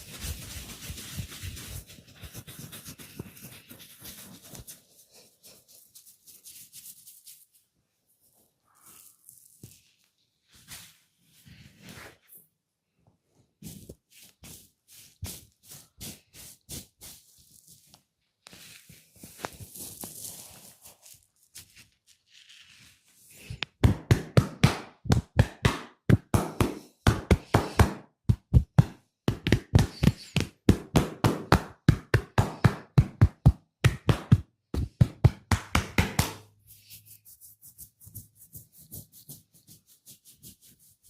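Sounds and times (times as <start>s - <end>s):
rhythmic slaps on head: 23.6s - 36.5s.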